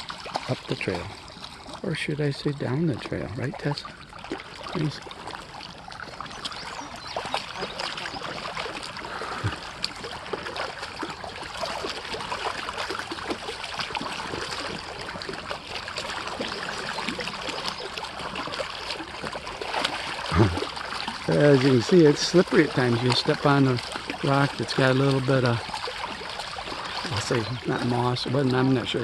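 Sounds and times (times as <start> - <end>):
shallow stream trickling: 0.0 - 29.0
small sharp clicks and splashes: 0.0 - 29.0.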